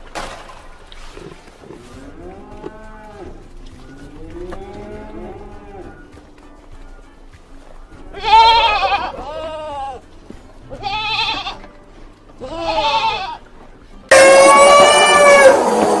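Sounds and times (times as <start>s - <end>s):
goat bleating: 8.1s - 10.0s, 10.6s - 11.7s, 12.4s - 13.5s
rooster crowing: 14.1s - 16.0s.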